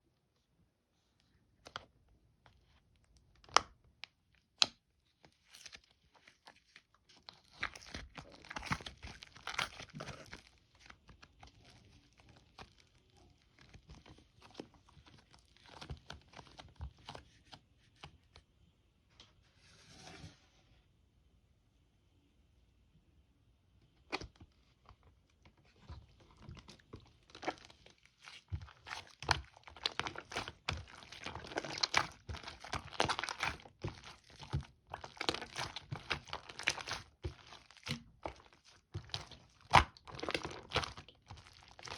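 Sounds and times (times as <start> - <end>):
slime popping and crackling: 7.2 - 17.0, 26.4 - 41.9.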